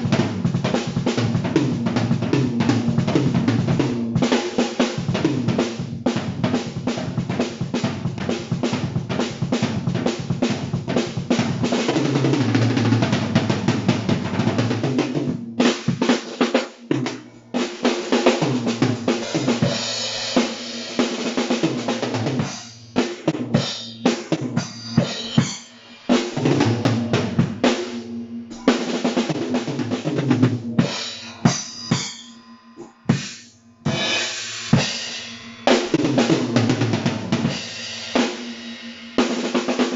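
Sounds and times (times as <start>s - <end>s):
drum kit playing: 0.0s - 39.9s.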